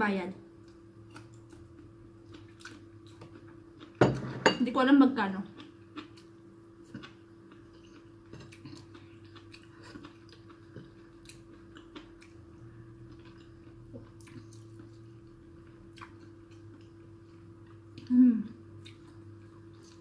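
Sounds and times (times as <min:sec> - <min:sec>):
chewing and biting food: 0:00.7 - 0:04.0, 0:05.6 - 0:18.1.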